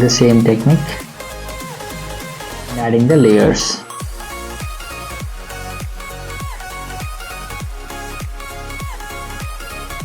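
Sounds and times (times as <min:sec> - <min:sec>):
kick drum beat: 0:03.4 - 0:10.0.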